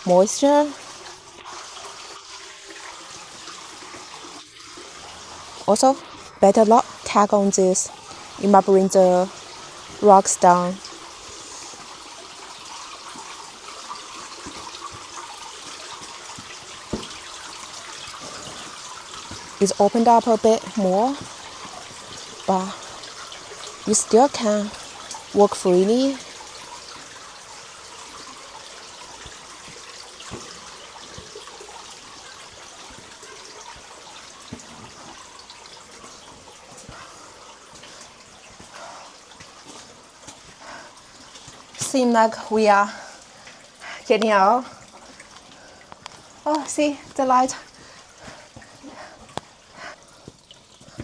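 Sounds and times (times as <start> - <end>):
trickling rushing water: 0.0 - 51.0
footsteps on stone steps: 5.1 - 27.2, 28.9 - 42.4, 43.9 - 51.0
sharp knocks: 16.9 - 17.2.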